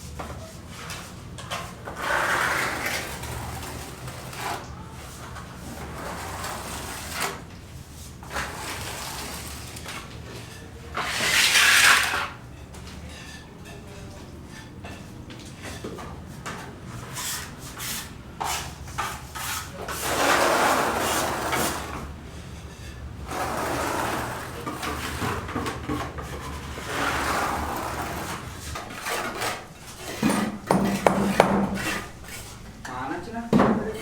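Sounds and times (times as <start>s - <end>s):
long scraping strokes: 26.7s - 34.0s
sharp knocks: 30.2s - 32.1s.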